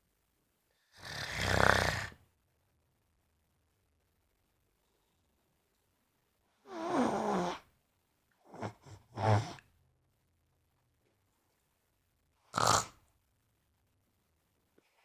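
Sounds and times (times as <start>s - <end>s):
dog snoring: 0.9s - 2.2s, 6.7s - 7.6s, 8.5s - 9.6s, 12.5s - 13.0s.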